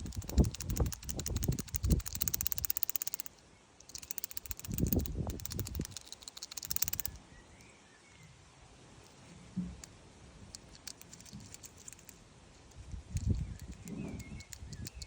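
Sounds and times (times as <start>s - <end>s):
fuel pump ticking fast: 0.0s - 3.3s, 3.9s - 7.1s.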